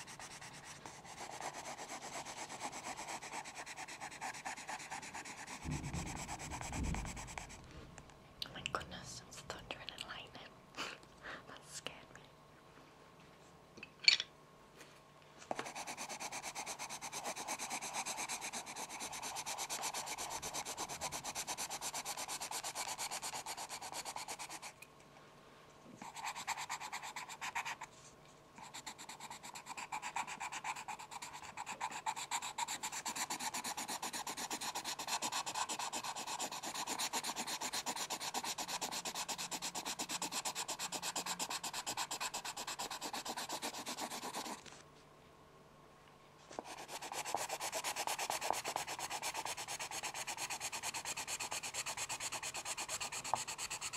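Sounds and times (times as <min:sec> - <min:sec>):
pencil scratching: 0:00.0 - 0:07.6, 0:15.5 - 0:24.8, 0:26.0 - 0:27.9, 0:28.6 - 0:44.6, 0:46.6 - 0:53.9.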